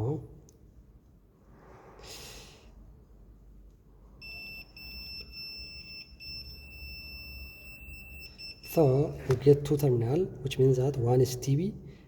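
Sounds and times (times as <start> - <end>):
high-pitched multimeter beep tone: 4.2 - 9.1.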